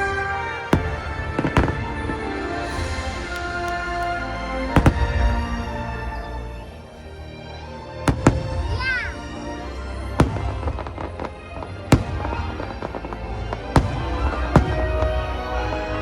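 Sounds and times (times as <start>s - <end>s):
fireworks bursting in sharp bangs: 0.0s - 5.7s, 8.1s - 8.8s, 10.2s - 15.8s
fireworks show music: 0.0s - 16.0s.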